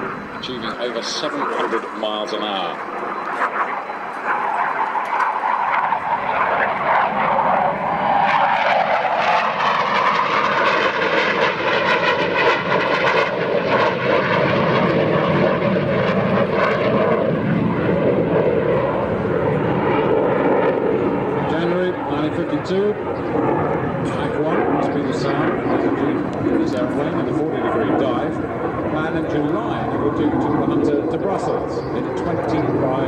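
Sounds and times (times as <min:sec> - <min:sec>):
jet engine flyby: 0:00.0 - 0:33.0.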